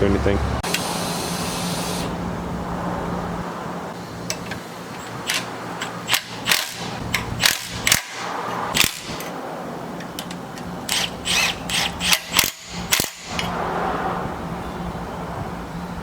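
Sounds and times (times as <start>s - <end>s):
metallic clicks of hand tools: 4.3s - 9.4s, 10.0s - 13.5s.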